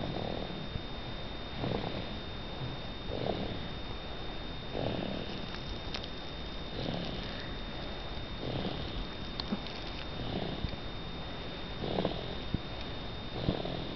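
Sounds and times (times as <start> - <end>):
slow rhythmic snoring: 0.0 - 0.7, 1.5 - 3.8, 4.7 - 6.1, 6.7 - 10.8, 11.4 - 13.9.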